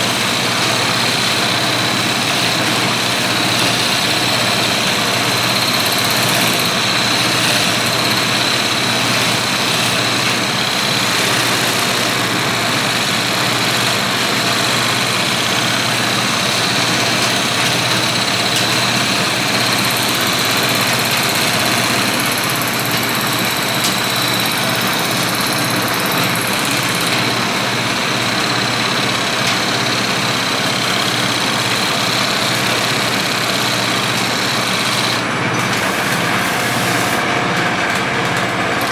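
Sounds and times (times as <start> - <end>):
lathe motor hum: 0.0 - 38.9
tool scraping spinning wood: 0.0 - 38.9.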